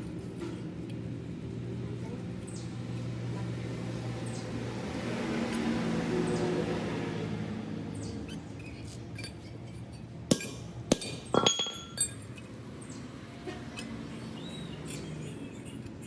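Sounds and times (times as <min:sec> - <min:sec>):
sharp metallic clinks: 0:10.3 - 0:12.5.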